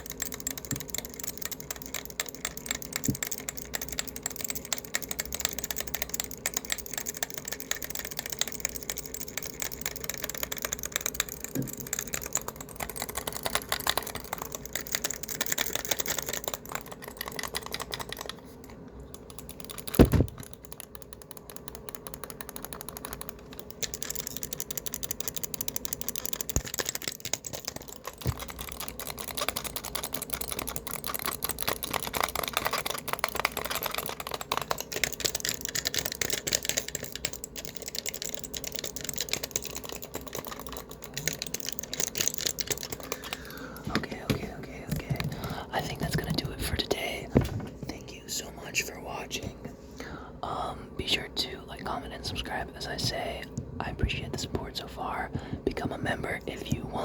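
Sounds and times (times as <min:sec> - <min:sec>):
fast typing on laptop keyboard: 0:00.0 - 0:47.6.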